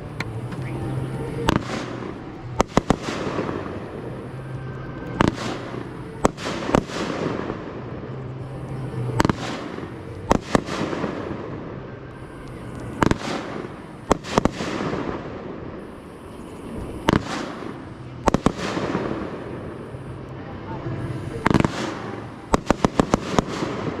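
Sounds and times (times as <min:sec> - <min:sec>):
firework shell bursts: 0:00.0 - 0:04.5, 0:05.1 - 0:07.6, 0:21.1 - 0:24.0
continuous rumble: 0:00.0 - 0:24.0.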